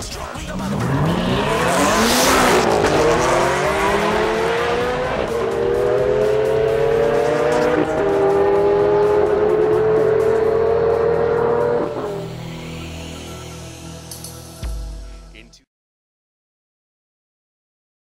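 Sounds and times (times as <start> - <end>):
car engine accelerating hard: 0.0 - 13.4.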